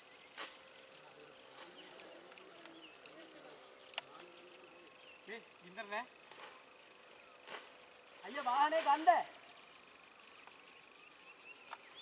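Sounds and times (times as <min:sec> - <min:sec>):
insects chirping: 0:00.0 - 0:12.0.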